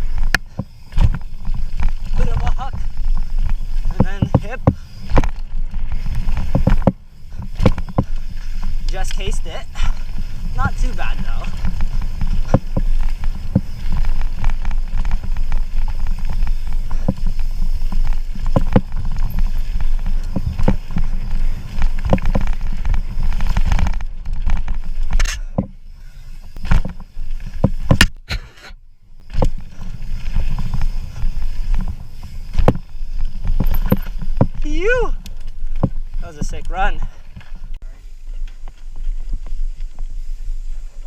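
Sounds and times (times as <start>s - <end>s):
bike rattling over bumps: 0.0s - 41.0s.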